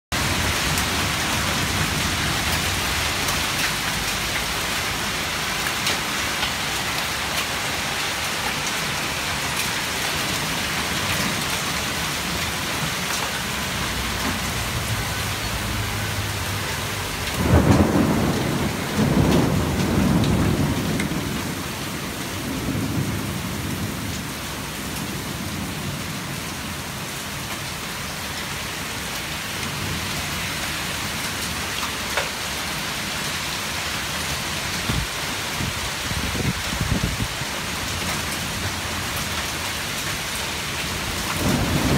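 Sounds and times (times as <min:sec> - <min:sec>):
torrential rain pouring: 0:00.1 - 0:41.9
thunderclap rumbling: 0:14.1 - 0:24.1, 0:41.0 - 0:41.9.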